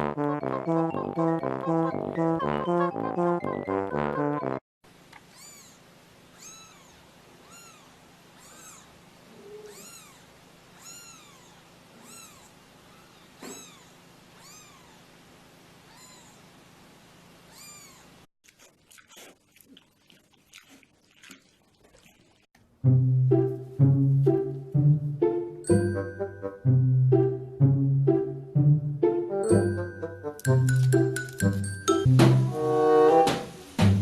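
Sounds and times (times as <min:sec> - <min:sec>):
cat meowing: 0:05.3 - 0:15.1, 0:15.9 - 0:16.5, 0:17.5 - 0:18.2.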